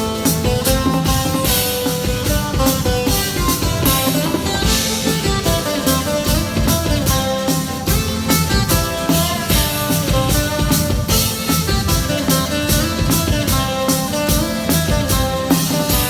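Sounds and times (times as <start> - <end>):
cymbal crashes: 0.0 - 16.0
drum-kit beat: 0.0 - 16.0
guitar: 0.0 - 16.0.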